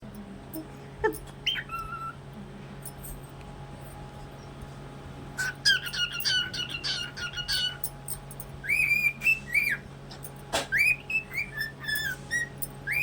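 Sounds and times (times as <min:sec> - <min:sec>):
steady low hum: 0:00.0 - 0:13.0
cockatiel whistling: 0:08.6 - 0:09.8, 0:10.7 - 0:13.0.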